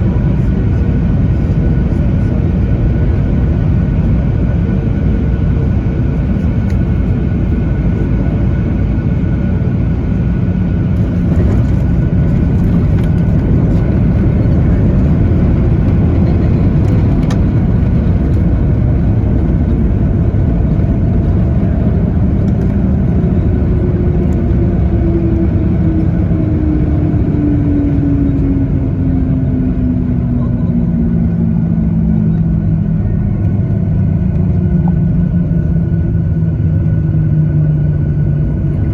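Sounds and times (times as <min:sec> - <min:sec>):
airplane cabin rumble: 0:00.0 - 0:38.9.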